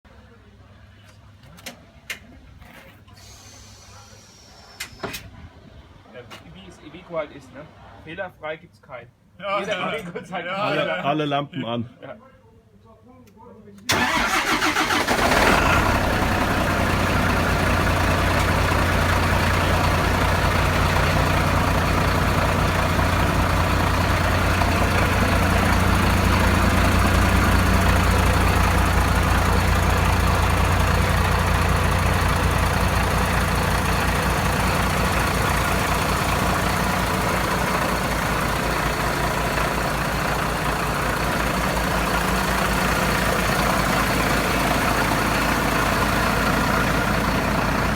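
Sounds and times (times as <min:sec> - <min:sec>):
diesel truck engine starting and idling: 0:13.9 - 0:47.9.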